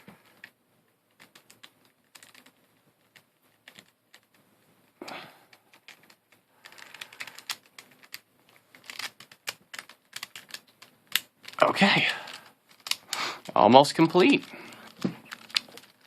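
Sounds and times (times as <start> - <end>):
plastic puzzle pieces clicking: 0.2 - 4.4, 5.0 - 16.0.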